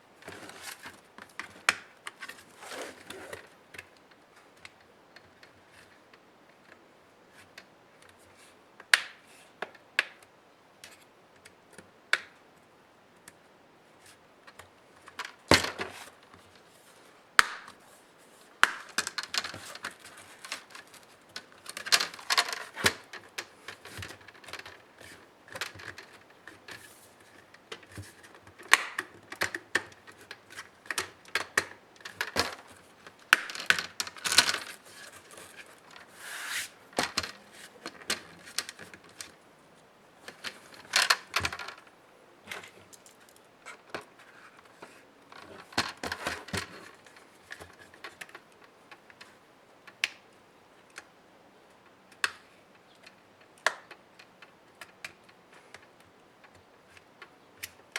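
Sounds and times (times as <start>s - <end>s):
rustling scrapes: 2.4s - 3.4s, 34.2s - 38.8s
laptop parts clicking and tapping: 18.6s - 36.1s, 52.1s - 57.9s.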